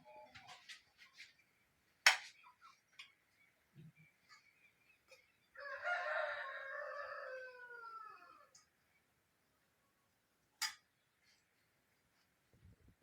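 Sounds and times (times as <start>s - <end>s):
rooster crowing: 5.5s - 8.6s.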